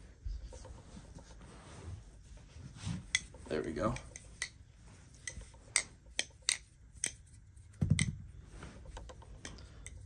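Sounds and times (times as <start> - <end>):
dull thump: 7.8 - 8.3.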